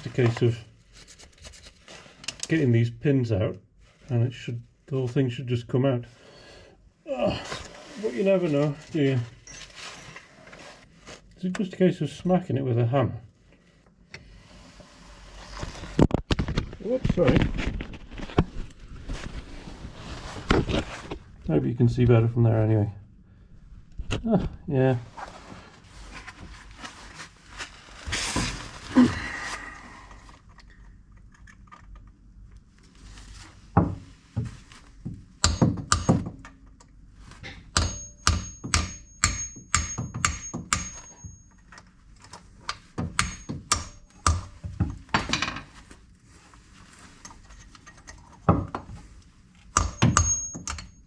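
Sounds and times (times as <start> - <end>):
hammer striking metal: 35.4 - 36.3, 37.7 - 41.5, 43.1 - 44.5, 49.8 - 51.0.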